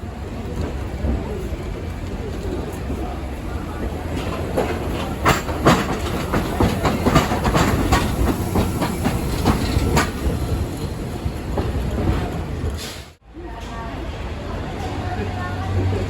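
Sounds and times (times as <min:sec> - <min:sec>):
rail vehicle rumble: 0:00.0 - 0:16.0
wheels clicking over rail joints: 0:00.4 - 0:12.8.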